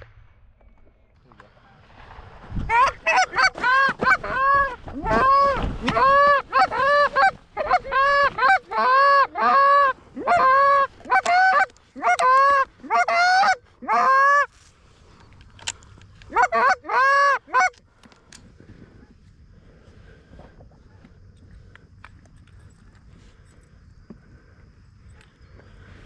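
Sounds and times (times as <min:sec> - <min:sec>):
goose honking: 0:02.7 - 0:14.5, 0:16.3 - 0:17.8.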